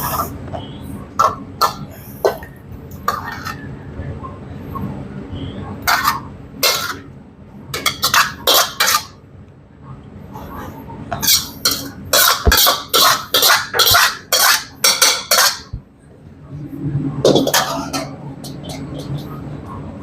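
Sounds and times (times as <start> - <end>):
metal utensil scraping a pan: 3.1 - 3.7, 5.9 - 7.0, 7.8 - 9.2, 11.2 - 15.7, 17.2 - 19.3.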